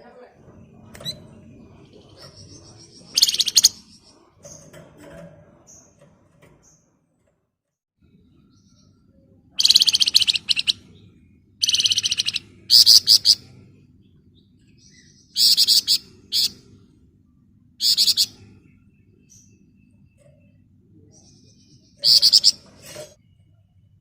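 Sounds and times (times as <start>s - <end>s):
songbird trilling: 2.2s - 3.9s, 9.6s - 10.9s, 11.6s - 13.5s, 14.9s - 16.6s, 17.8s - 18.4s, 21.8s - 22.6s.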